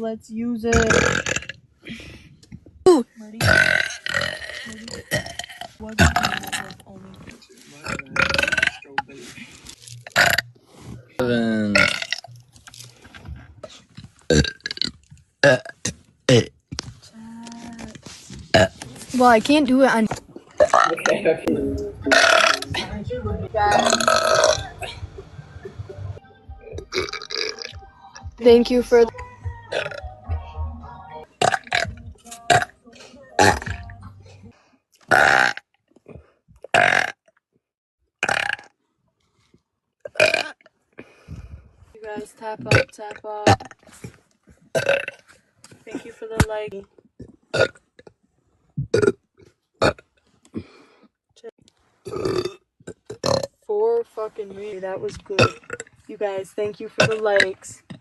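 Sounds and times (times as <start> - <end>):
person belching loudly: 0.7 - 1.6, 3.4 - 6.8, 7.8 - 9.1, 10.0 - 10.5, 11.2 - 12.4, 14.3 - 16.5, 22.1 - 22.9, 23.7 - 25.0, 26.7 - 27.7, 29.7 - 30.1, 31.4 - 32.8, 33.4 - 34.0, 35.1 - 35.6, 38.2 - 38.7, 40.1 - 40.6, 44.8 - 45.2, 48.9 - 49.2, 52.1 - 53.5, 55.4 - 55.8
person burping: 0.7 - 1.6, 3.4 - 6.8, 7.8 - 10.6, 11.2 - 12.4, 14.3 - 16.6, 18.5 - 18.7, 22.1 - 22.9, 23.7 - 25.0, 26.6 - 27.7, 29.7 - 30.0, 31.4 - 34.4, 35.1 - 37.2, 38.2 - 38.7, 40.1 - 40.6, 44.7 - 45.2, 47.5 - 48.1, 48.8 - 49.2, 49.8 - 50.8, 52.1 - 53.5, 55.4 - 55.9.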